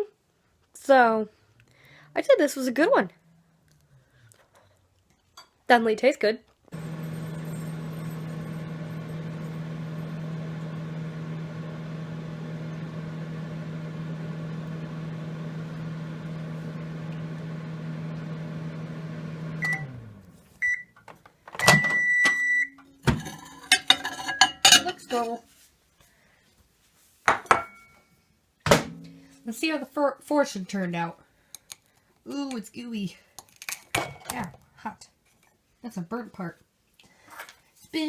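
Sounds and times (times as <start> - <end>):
microwave oven humming: 6.7 - 20.9
microwave beeps: 6.8 - 13.1, 19.4 - 20.0, 20.6 - 21.0, 21.6 - 22.8.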